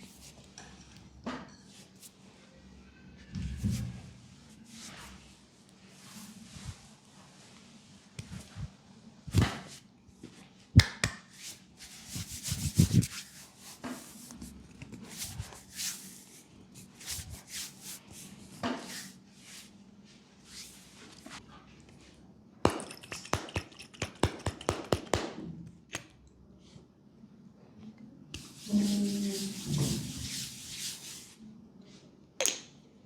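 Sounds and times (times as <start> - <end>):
hand slapping skin: 10.8 - 11.4, 22.7 - 25.4
hands rubbing skin: 11.3 - 19.7, 22.7 - 25.3, 28.4 - 31.4.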